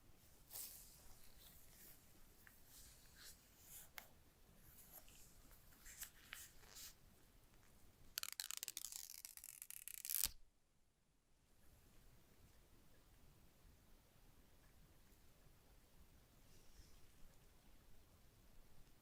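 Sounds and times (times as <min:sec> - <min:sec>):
packaging crackling and tearing: 0:08.2 - 0:10.4.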